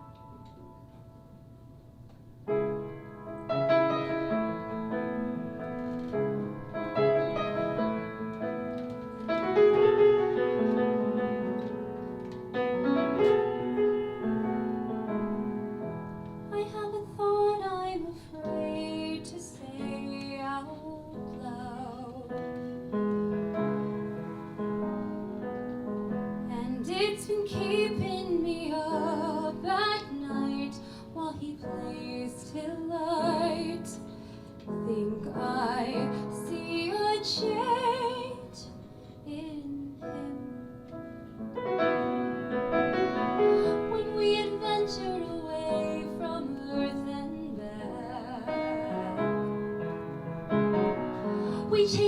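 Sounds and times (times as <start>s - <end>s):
piano chords: 0.0s - 52.0s
woman singing: 16.5s - 22.4s, 26.4s - 34.1s, 34.7s - 40.6s, 43.5s - 49.5s, 51.5s - 52.0s.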